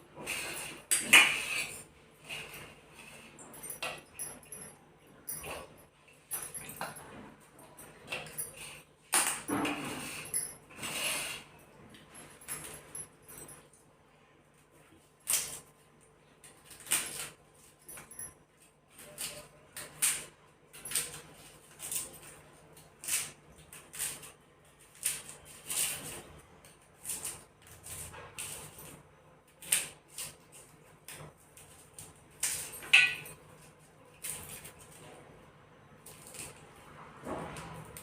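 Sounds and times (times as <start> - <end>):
kitchen utensil strokes: 0.0 - 4.0, 9.5 - 11.6.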